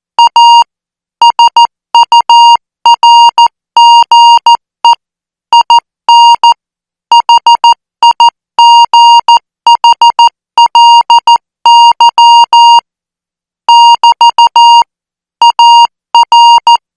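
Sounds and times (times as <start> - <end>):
morse code beeps: 0.2 - 0.6, 1.2 - 4.5, 5.6 - 12.8, 13.7 - 14.8, 15.4 - 16.8.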